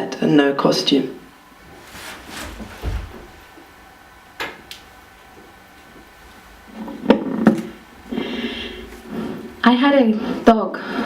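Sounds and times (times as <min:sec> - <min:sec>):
dull thud: 0:02.5 - 0:03.4.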